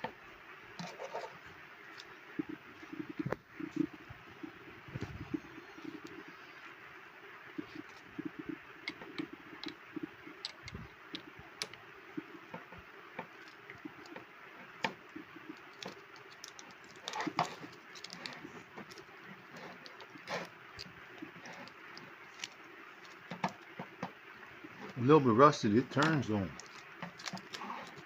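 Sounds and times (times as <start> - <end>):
rustling: 25.8 - 28.0.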